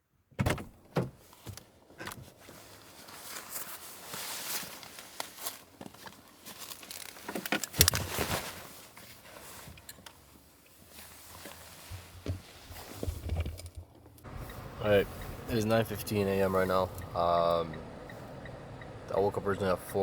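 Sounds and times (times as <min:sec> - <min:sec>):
close rustling and crinkling: 0:01.2 - 0:15.2.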